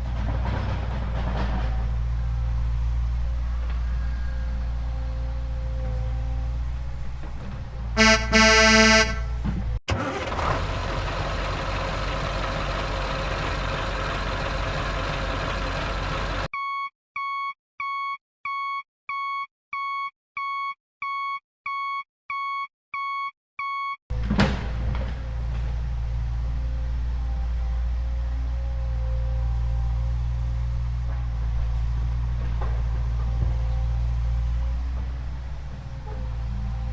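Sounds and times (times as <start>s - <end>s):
engine rumble: 0.0s - 16.5s, 24.1s - 36.9s
horn honk: 8.0s - 9.5s.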